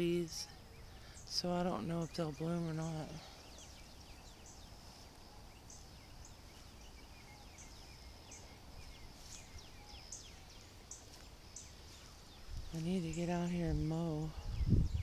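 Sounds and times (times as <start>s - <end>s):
birds chirping faintly: 0.0s - 15.0s.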